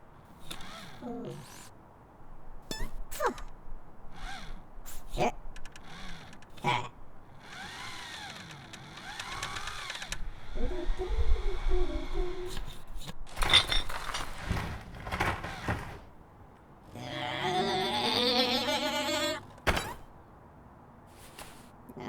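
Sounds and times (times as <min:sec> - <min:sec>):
robot motor whirring: 0:00.4 - 0:01.7, 0:02.7 - 0:16.1, 0:19.5 - 0:20.1
sharp mechanical clicks and clanks: 0:02.7 - 0:16.1.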